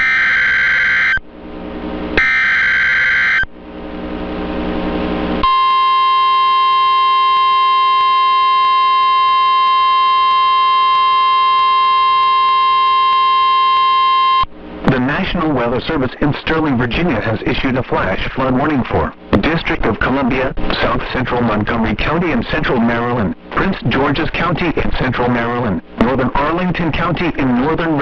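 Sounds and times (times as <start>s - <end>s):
single-tone warning alarm: 0.0s - 1.2s, 2.2s - 3.5s, 5.4s - 14.5s.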